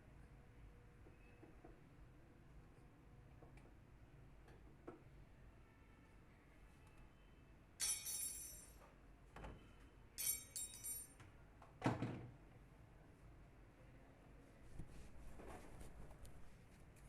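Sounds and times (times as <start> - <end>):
metal tools clinking: 7.8 - 8.8, 10.2 - 11.2.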